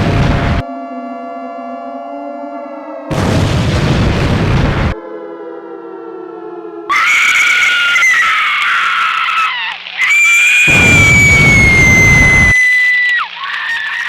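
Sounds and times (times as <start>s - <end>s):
loud low rumble: 0.0s - 0.6s, 3.1s - 5.0s
low droning chord: 0.0s - 6.9s
high-pitched alarm shriek: 6.9s - 14.0s.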